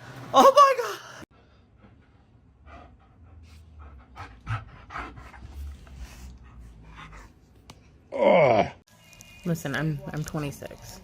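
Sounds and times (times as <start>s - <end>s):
dog panting: 1.7s - 7.5s.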